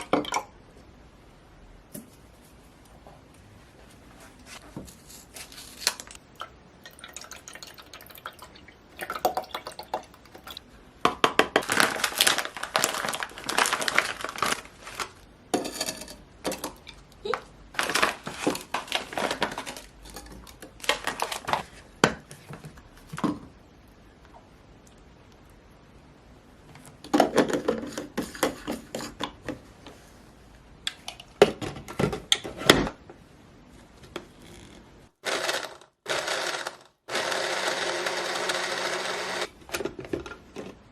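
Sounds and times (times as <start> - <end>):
liquid sloshing and dripping: 6.3 - 10.7.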